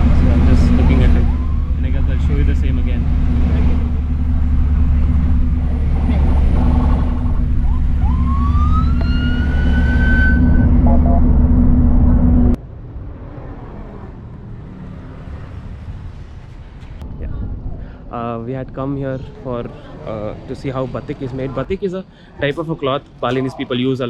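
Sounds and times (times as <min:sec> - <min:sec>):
rising whine: 0:00.0 - 0:12.6
car road and engine noise: 0:00.0 - 0:24.0
outdoor ambience: 0:00.0 - 0:24.0.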